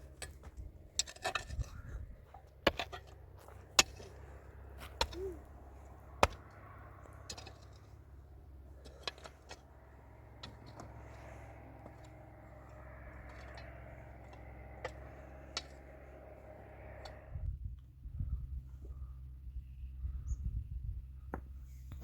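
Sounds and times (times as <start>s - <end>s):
sharp knocks of hard objects: 4.8s - 5.5s, 6.1s - 7.8s.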